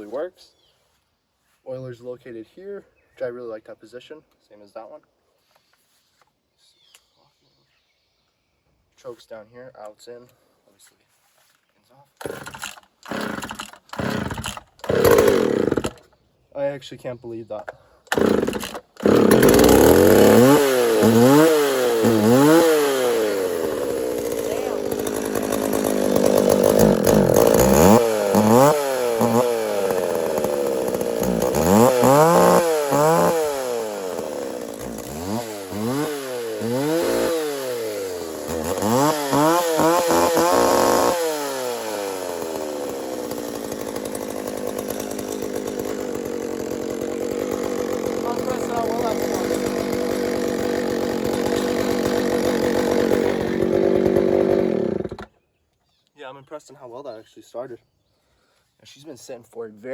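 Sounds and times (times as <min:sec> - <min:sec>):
chainsaw revving and idling: 0:12.2 - 0:16.1, 0:18.1 - 0:55.3.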